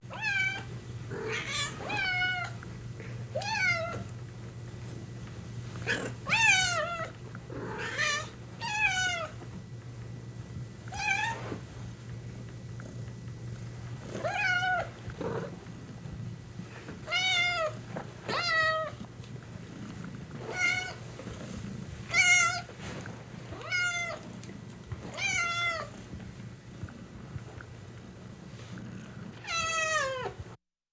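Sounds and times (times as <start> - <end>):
steady low hum: 0.0 - 30.6
young cat meowing: 29.4 - 30.3.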